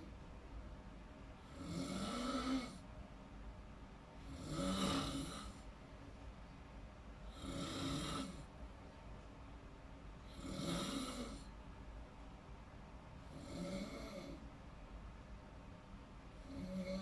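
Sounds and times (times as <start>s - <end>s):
person snoring: 1.5s - 2.8s, 4.2s - 5.6s, 7.3s - 8.4s, 10.3s - 11.4s, 13.3s - 14.4s, 16.4s - 17.0s.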